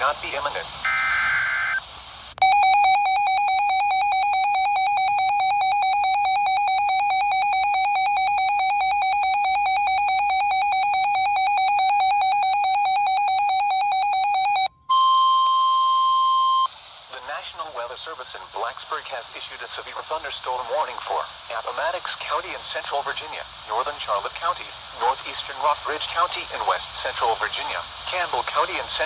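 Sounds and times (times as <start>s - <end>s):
electronic warbling alarm tone: 2.4s - 16.7s
steady warning alarm tone: 2.4s - 16.7s.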